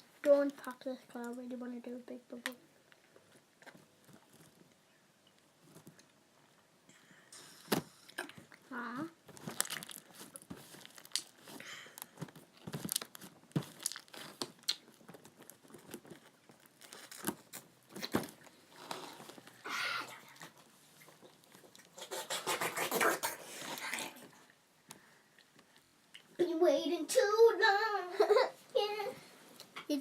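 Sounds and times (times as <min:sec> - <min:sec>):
slime clicking and crackling: 0:09.4 - 0:11.4, 0:12.7 - 0:18.1.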